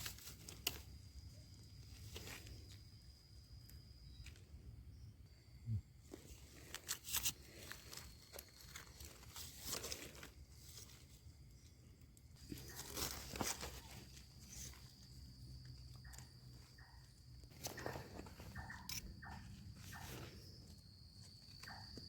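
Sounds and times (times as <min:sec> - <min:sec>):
dry leaf litter crunching: 0:06.7 - 0:11.2.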